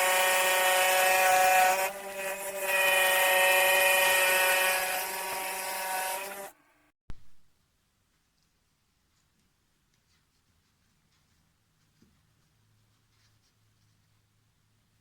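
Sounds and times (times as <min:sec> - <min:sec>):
scroll saw running: 0:00.0 - 0:06.6.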